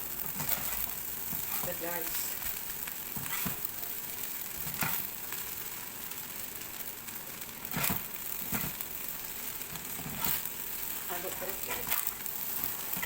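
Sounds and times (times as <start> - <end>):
fried rice sizzling in a pan: 0.0 - 13.0
spatula scraping a pan: 0.2 - 2.4, 3.2 - 3.7, 9.8 - 10.5.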